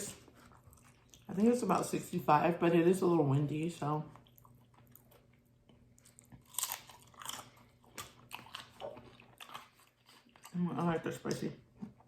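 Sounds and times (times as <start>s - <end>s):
crunchy chewing: 0.0s - 1.4s, 4.1s - 12.0s.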